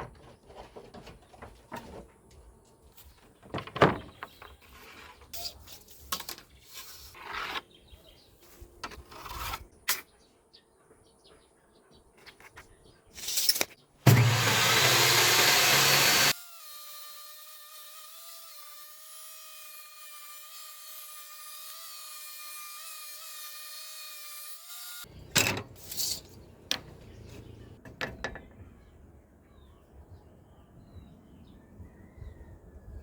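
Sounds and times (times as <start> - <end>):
wood knocking and clattering: 3.2 - 4.6, 27.8 - 28.6
power tool motor whining: 14.1 - 19.0
faint bird chirps: 28.4 - 33.0.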